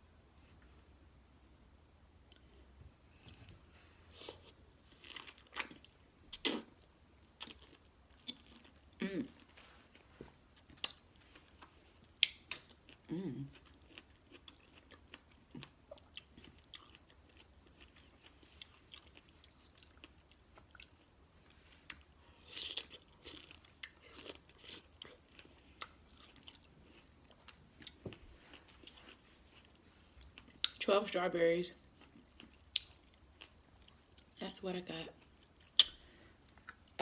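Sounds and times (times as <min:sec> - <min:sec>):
wet chewing and smacking: 0:04.2 - 0:30.8, 0:31.9 - 0:34.4, 0:35.2 - 0:37.0
person humming mmm: 0:09.0 - 0:09.4, 0:13.1 - 0:13.5.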